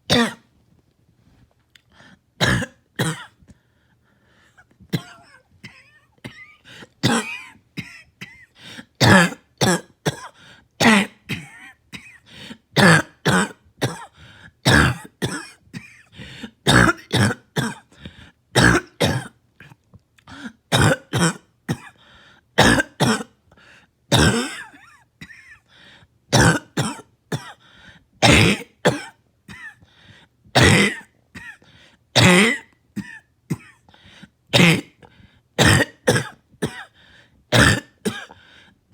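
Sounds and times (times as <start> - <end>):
person coughing: 0.1 - 0.5, 2.4 - 3.4, 4.9 - 22.0, 22.6 - 23.4, 24.1 - 25.7, 26.3 - 27.6, 28.2 - 29.8, 30.6 - 35.0, 35.6 - 38.5
throat clearing: 0.1 - 0.5, 2.4 - 3.4, 4.9 - 22.0, 22.6 - 23.4, 24.1 - 25.7, 26.3 - 27.6, 28.2 - 29.9, 30.6 - 34.0, 34.6 - 38.4.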